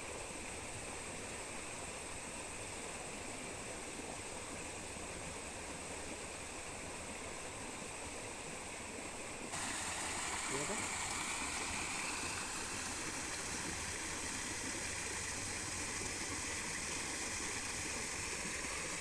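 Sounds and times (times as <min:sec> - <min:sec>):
waterfall rushing: 0:09.5 - 0:16.8.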